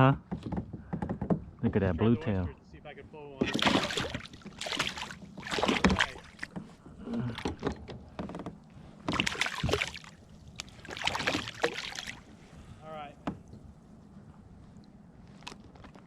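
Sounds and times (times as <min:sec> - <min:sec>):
water splashing against kayak: 0:03.4 - 0:07.7, 0:09.0 - 0:13.7.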